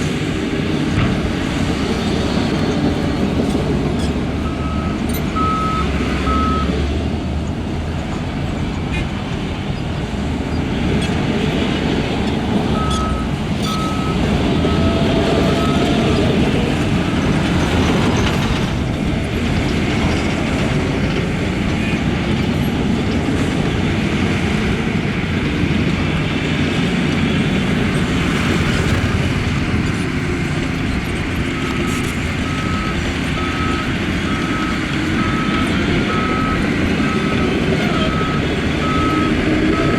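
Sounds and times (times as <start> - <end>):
diesel machinery running: 0.0 - 39.9
reversing alarm beeping: 4.4 - 6.7, 12.7 - 18.0, 30.8 - 39.9.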